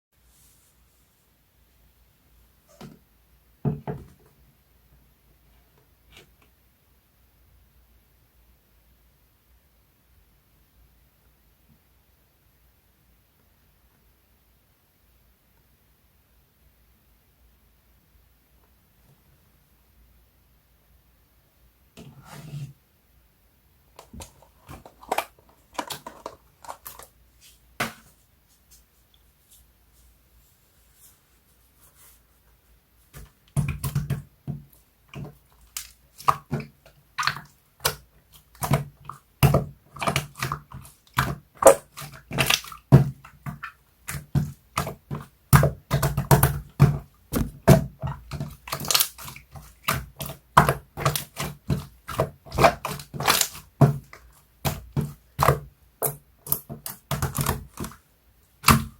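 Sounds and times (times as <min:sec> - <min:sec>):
slime squished by hand: 0:35.1 - 0:58.0, 0:58.6 - 0:58.9.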